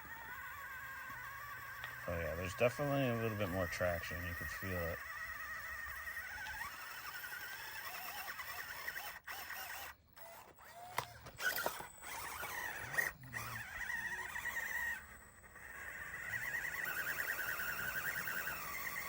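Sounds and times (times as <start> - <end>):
small electric motor whining: 0.0 - 19.0
sharp clicks and scrapes: 6.3 - 14.0.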